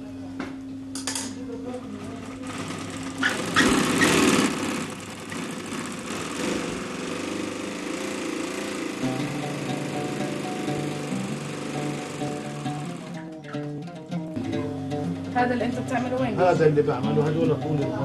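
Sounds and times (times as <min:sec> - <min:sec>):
sewing machine running: 0:02.2 - 0:13.3.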